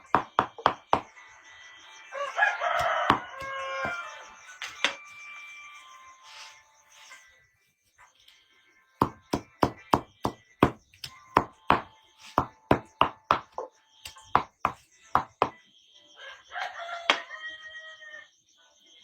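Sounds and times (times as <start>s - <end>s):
rooster crowing: 2.0s - 5.8s, 16.2s - 18.3s
chopping strikes: 9.0s - 15.6s.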